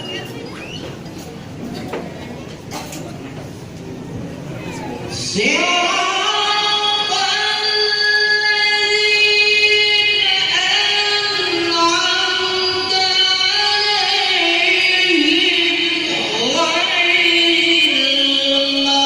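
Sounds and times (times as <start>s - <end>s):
person reciting melodically: 5.1s - 19.0s.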